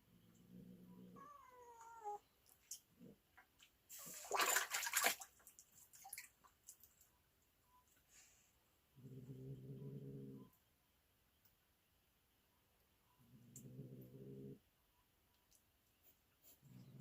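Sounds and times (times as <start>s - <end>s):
water splash: 4.0s - 5.3s.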